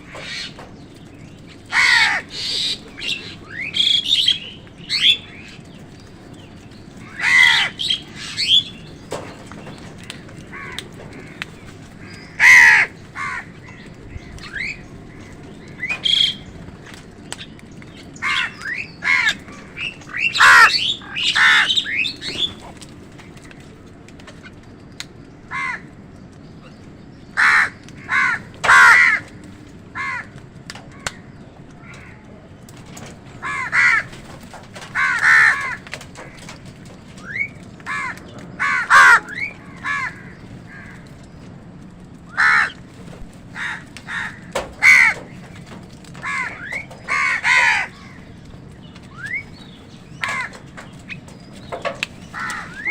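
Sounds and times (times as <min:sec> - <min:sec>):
crows cawing: 0:00.0 - 0:00.7, 0:01.6 - 0:05.6, 0:07.0 - 0:22.8, 0:25.5 - 0:26.0, 0:27.3 - 0:32.3, 0:33.3 - 0:41.4, 0:42.3 - 0:52.9.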